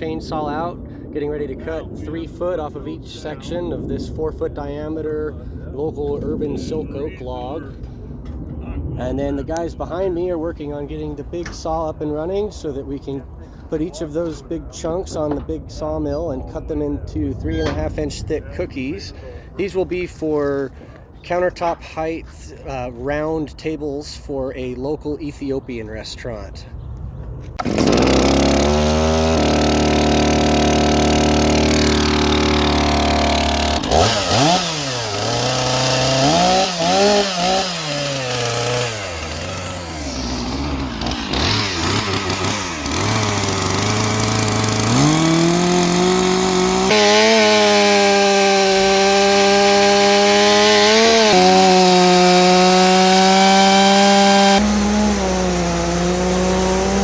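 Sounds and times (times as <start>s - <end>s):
gas chainsaw revving: 27.6s - 57.0s.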